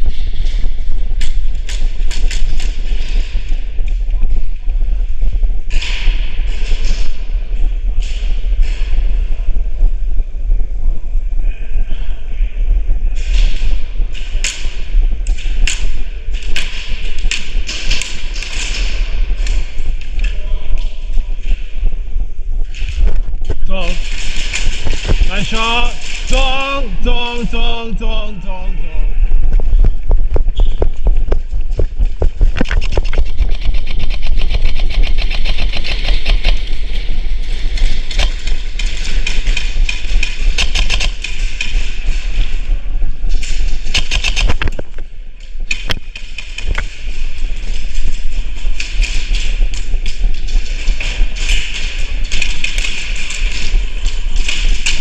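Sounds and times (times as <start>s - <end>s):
low rumble: 0.0s - 55.0s
airsoft guns firing: 43.8s - 44.6s.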